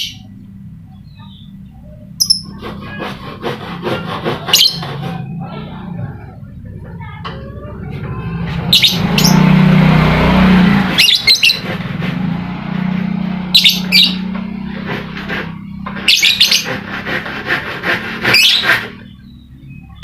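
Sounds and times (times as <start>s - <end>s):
bird chirping: 0.0s - 2.6s, 8.1s - 9.6s, 10.9s - 11.7s, 13.5s - 14.4s, 15.5s - 16.8s, 18.3s - 20.0s.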